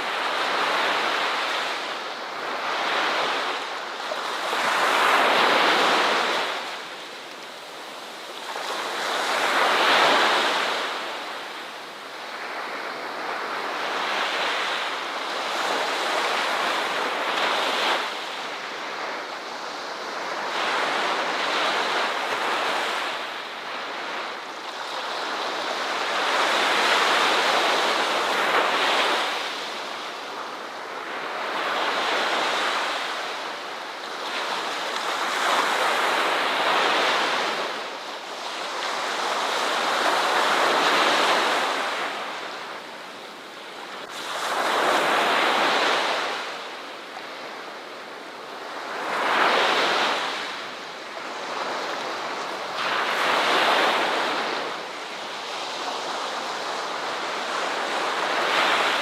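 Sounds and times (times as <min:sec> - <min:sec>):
ocean waves breaking on beach: 0:00.0 - 0:59.0.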